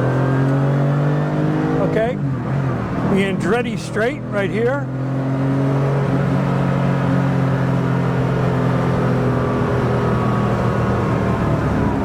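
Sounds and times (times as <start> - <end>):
tyre and road noise: 0.0 - 12.0
car engine running: 1.6 - 12.0.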